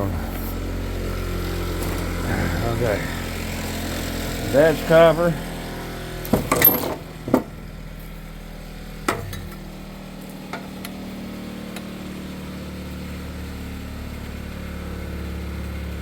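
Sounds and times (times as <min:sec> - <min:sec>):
steady low hum: 0:00.0 - 0:10.4.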